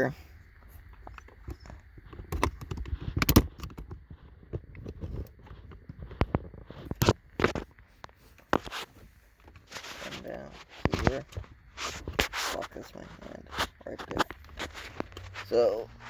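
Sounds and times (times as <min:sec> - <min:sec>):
screwdriver clicks and scrapes: 0:02.2 - 0:03.9.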